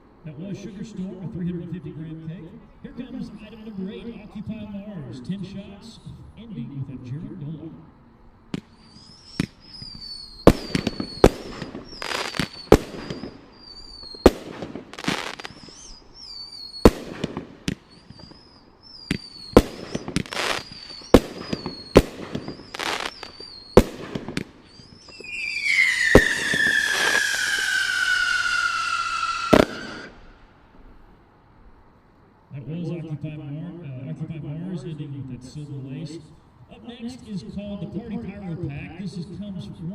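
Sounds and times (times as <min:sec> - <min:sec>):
firework shots and bursts: 0:08.5 - 0:30.3
firework whistle: 0:08.6 - 0:30.4.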